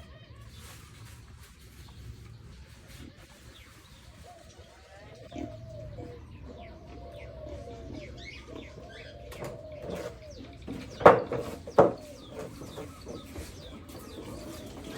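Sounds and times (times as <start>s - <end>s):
pigs grunting and squealing: 5.2s - 11.3s.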